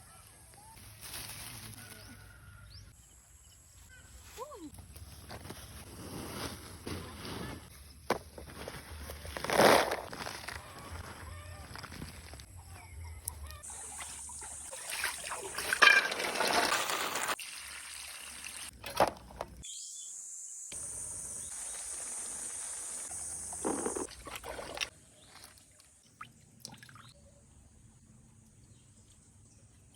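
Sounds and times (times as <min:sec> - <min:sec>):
water pouring and trickling: 0:13.7 - 0:19.2, 0:21.5 - 0:27.2.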